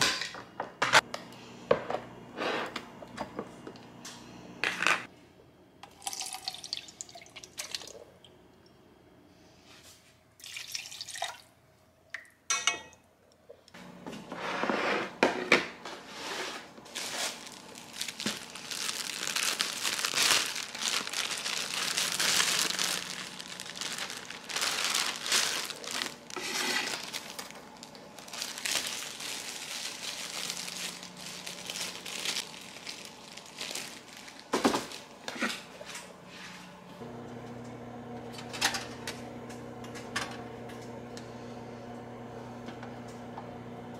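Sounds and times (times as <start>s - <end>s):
electrical hum: 0.0s - 10.4s, 13.1s - 43.9s
dishes clattering: 12.5s - 13.0s
rustling and watery noise: 16.8s - 35.7s.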